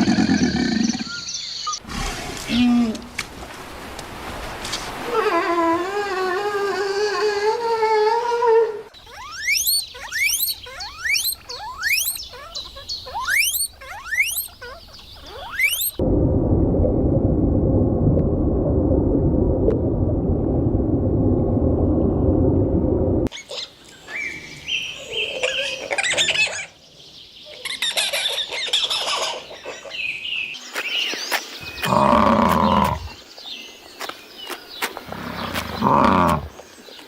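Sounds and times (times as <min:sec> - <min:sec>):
high animal calls and chirps: 0:05.1 - 0:16.0, 0:23.3 - 0:26.8
low pitched animal call: 0:05.1 - 0:16.0
dense low animal noise: 0:31.7 - 0:33.2, 0:35.0 - 0:36.6.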